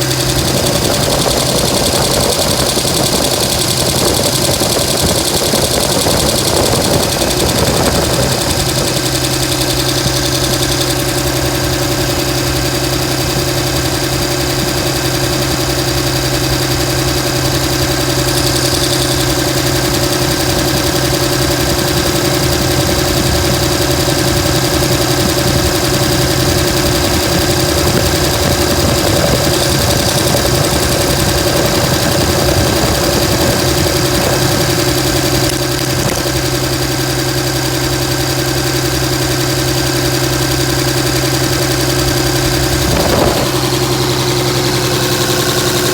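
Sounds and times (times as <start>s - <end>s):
diesel engine idling with clatter: 0.0s - 45.9s.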